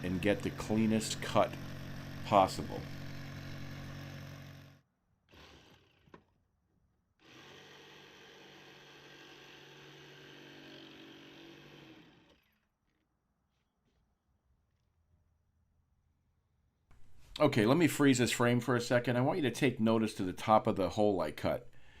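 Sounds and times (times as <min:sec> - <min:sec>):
electric jigsaw cutting wood: 0:00.1 - 0:06.3, 0:07.2 - 0:12.7.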